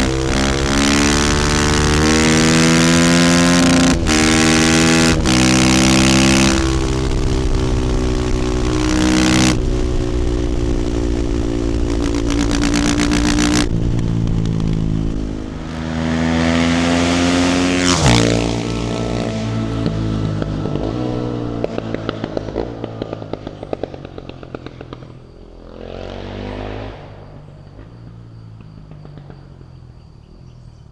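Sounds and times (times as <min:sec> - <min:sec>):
exhaust popping: 0:00.0 - 0:30.9
motorcycle engine revving: 0:00.0 - 0:30.9.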